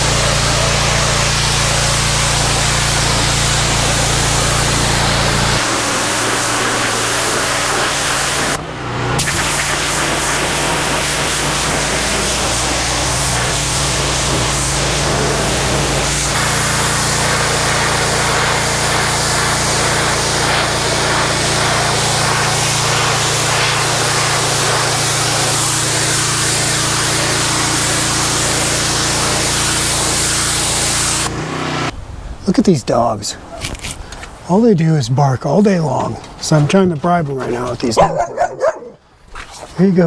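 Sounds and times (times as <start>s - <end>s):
pressure washer spray hissing: 0.0s - 8.6s, 9.2s - 31.9s
pressure washer engine humming: 0.0s - 32.6s, 33.2s - 40.0s.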